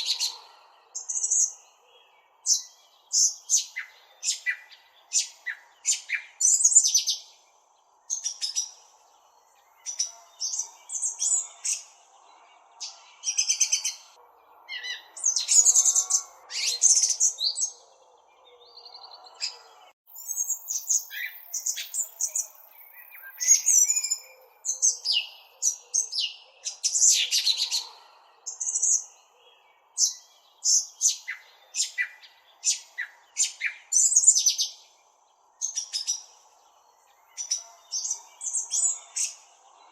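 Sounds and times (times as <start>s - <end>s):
small bird chirping: 0.0s - 7.4s, 8.0s - 12.2s, 12.8s - 35.0s, 35.6s - 39.9s.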